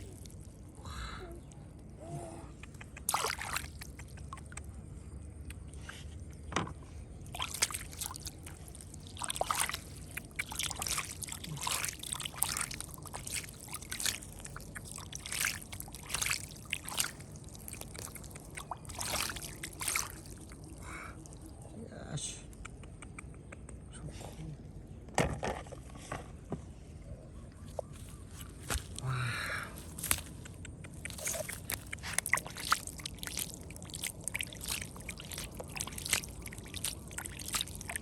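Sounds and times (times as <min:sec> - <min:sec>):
water splashing and sloshing: 0:00.0 - 0:02.0, 0:02.6 - 0:21.7, 0:27.6 - 0:38.0
low rush of flowing water: 0:07.2 - 0:21.7, 0:31.1 - 0:38.0.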